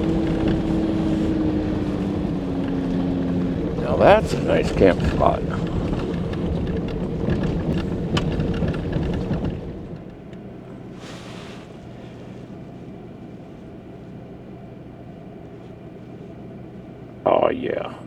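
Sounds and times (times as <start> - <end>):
sharp knocks and rattles: 0.0 - 10.4
tyres rumbling over gravel: 0.0 - 16.8
vehicle engine running: 0.0 - 18.0
brief hiss: 11.0 - 12.5.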